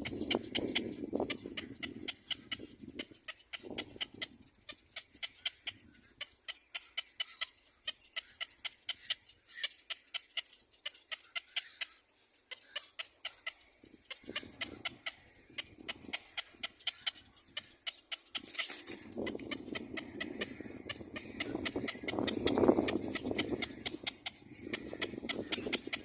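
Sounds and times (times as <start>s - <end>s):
baby bird chirping: 12.6s - 26.0s.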